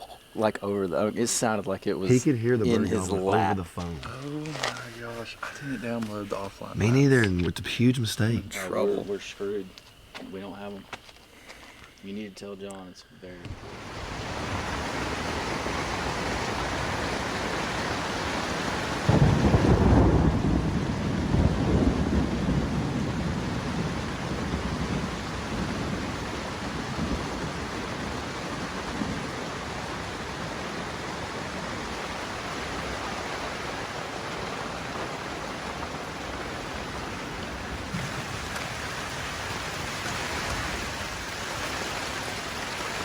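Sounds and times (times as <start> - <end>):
steady rain: 0.0 - 43.0
thunder rumbling: 13.6 - 41.7.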